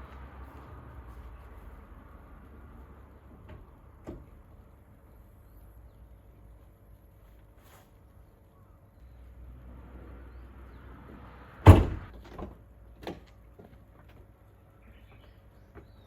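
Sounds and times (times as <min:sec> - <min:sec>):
soft rustling: 0:06.3 - 0:08.4
van door slamming: 0:11.6 - 0:12.5.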